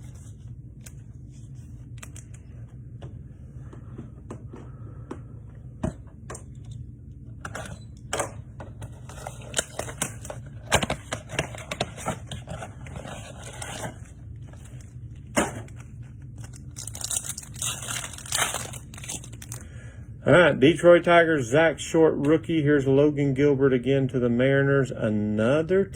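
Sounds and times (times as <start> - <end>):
card pack wrapper tearing: 15.5 - 19.6
wrapper crinkling: 15.7 - 19.6.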